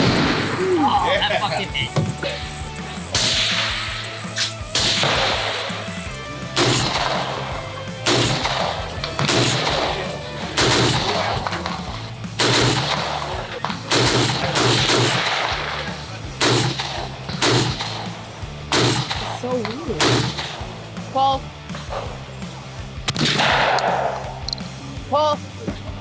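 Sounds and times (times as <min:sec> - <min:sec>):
gunshots with ringing tail: 0:00.0 - 0:02.4, 0:03.2 - 0:20.8, 0:23.1 - 0:24.5
music: 0:00.0 - 0:26.0.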